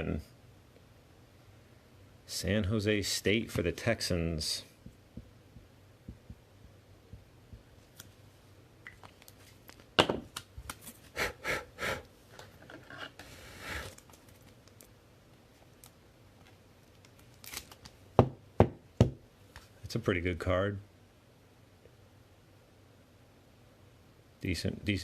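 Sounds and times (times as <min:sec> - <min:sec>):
soft card rustle: 0:07.8 - 0:11.1, 0:12.3 - 0:18.0.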